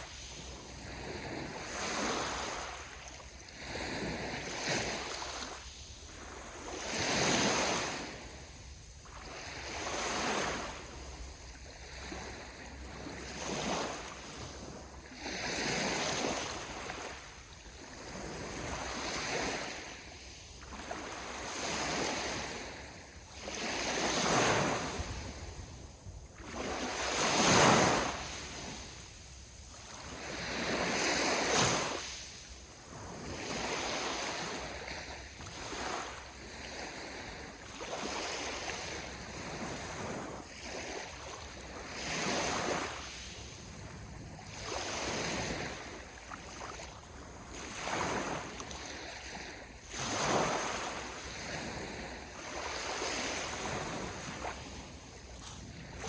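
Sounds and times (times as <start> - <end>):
ocean waves breaking on shore: 0.0 - 56.0.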